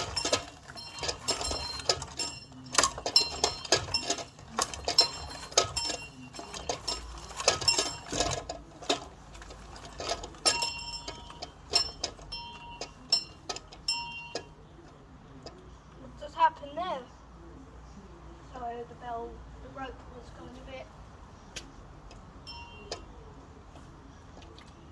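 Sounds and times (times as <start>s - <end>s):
small metal bell clanging: 0.0s - 9.0s, 9.9s - 14.5s, 22.5s - 23.1s.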